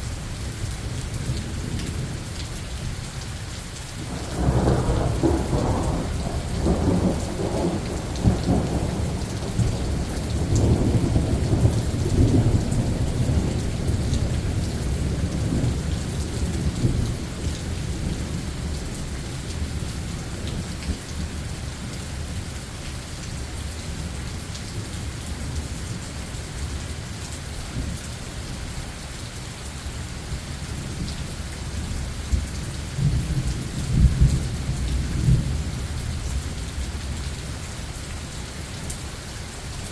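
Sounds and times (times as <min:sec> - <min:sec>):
steady rain falling: 0:00.0 - 0:39.9
thunder rumbling: 0:04.1 - 0:18.8.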